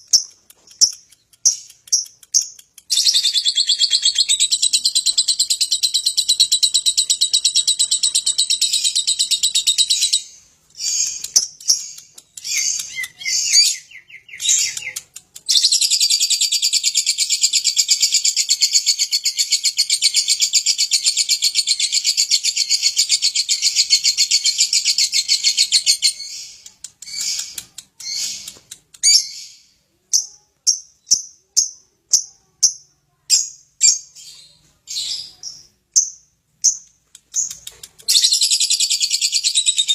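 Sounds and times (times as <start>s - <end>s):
lovebird chattering trill: 0.0s - 29.5s
bird chirps: 0.0s - 39.9s.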